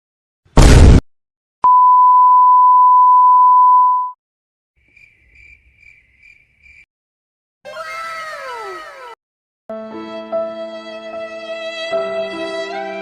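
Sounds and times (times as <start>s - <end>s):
censor bleep: 1.6s - 4.2s.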